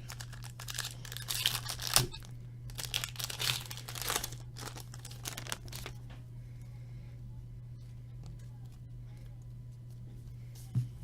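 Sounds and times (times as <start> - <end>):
wrapper tearing and crinkling: 0.0 - 6.0
steady low hum: 0.0 - 11.0.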